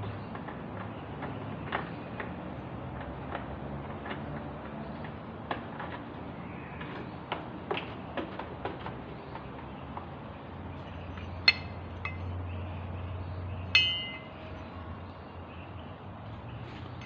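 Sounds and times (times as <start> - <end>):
metal parts clinking: 13.7 - 14.7.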